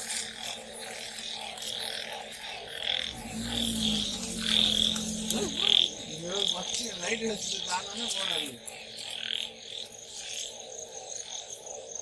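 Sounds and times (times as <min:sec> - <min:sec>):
frogs calling in chorus: 0:00.0 - 0:12.0
steady low hum: 0:03.0 - 0:08.8.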